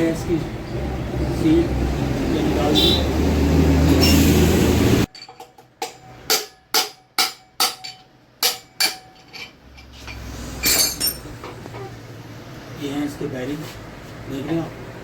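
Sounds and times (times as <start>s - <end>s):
hammer striking metal: 5.2s - 9.3s.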